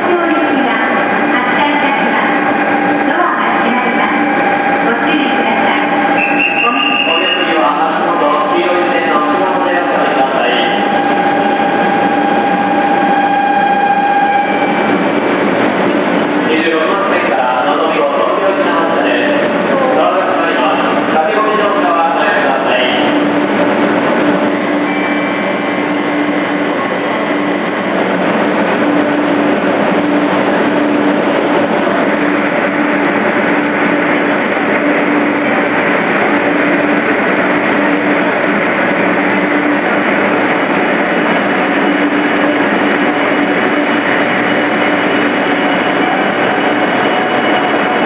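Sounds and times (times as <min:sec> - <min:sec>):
train rushing: 0:00.0 - 0:48.0.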